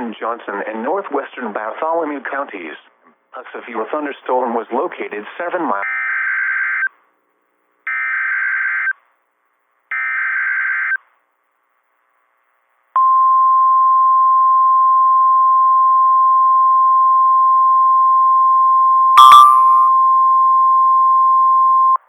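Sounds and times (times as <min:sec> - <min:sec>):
warbling digital screech bursts: 0:19.2 - 0:19.8
steady warning alarm tone: 0:19.2 - 0:19.9.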